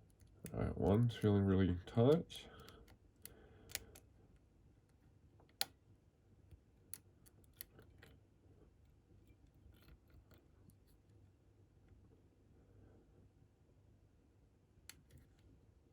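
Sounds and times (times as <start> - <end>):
lock pick clicking in lock: 2.6 - 4.0.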